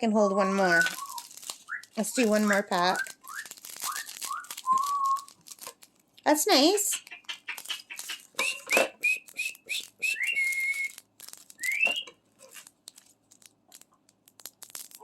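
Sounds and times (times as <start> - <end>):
parrot whistling: 0.5 - 5.3, 6.9 - 11.0, 11.6 - 12.1.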